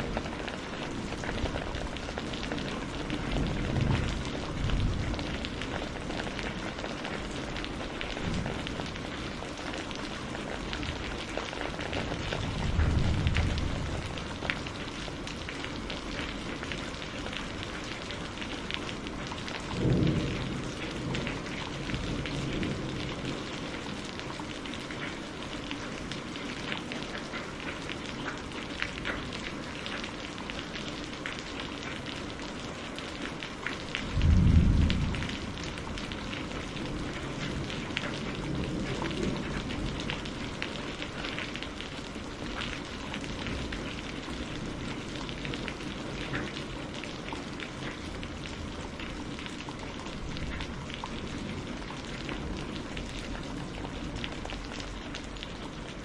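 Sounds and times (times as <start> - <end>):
rain pattering: 0.0 - 56.0
deep thunder rumble: 12.3 - 14.6, 19.8 - 23.2, 34.1 - 37.8.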